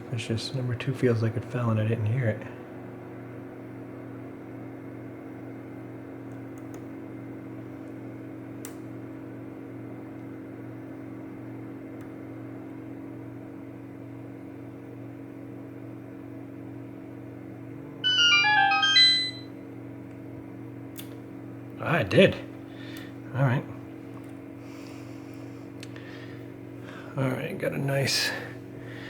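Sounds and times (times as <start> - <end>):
low electrical hum: 0.0 - 29.0
short electronic jingle: 18.0 - 19.4.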